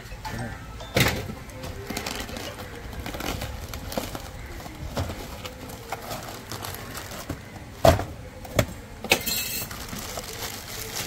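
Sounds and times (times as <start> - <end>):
packaging crinkling: 1.8 - 7.6, 9.2 - 11.0.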